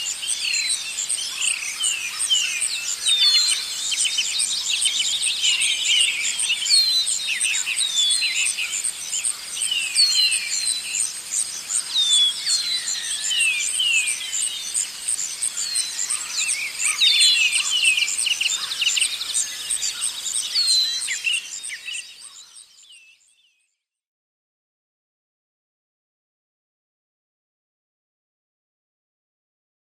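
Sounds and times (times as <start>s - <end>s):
insect trill: 0.0s - 23.2s
birds chirping: 0.0s - 23.5s.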